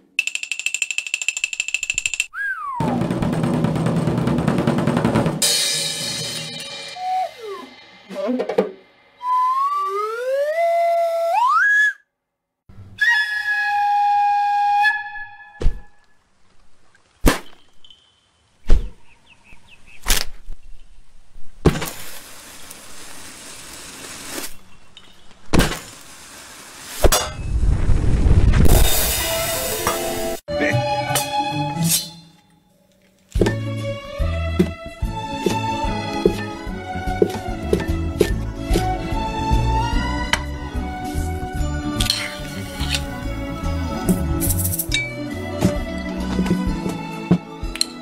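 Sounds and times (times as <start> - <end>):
held whistle note: 2.3 - 3.0, 6.7 - 8.4, 9.2 - 12.0
slide whistle rising: 2.3 - 3.0, 6.7 - 8.4, 9.1 - 12.0, 13.0 - 15.6
bursts of hiss: 21.8 - 24.6, 25.6 - 27.1.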